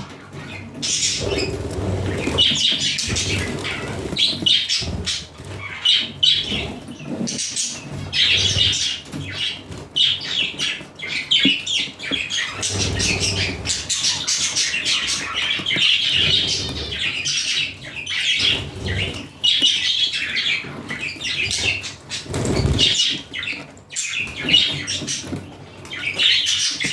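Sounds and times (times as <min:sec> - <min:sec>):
wings flapping: 0:00.0 - 0:09.6, 0:21.5 - 0:23.2
budgerigars chattering and squawking: 0:00.0 - 0:26.9.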